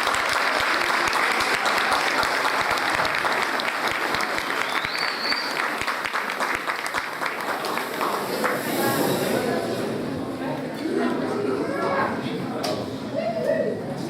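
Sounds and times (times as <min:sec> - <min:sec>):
audience applauding: 0:00.0 - 0:09.5
short rising whistle: 0:04.6 - 0:05.7.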